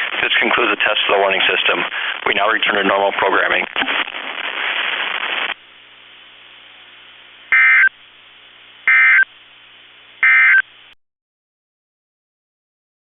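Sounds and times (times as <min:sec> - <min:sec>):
faint radio hiss: 0:00.0 - 0:11.0
shrill digital data bursts: 0:07.6 - 0:07.9.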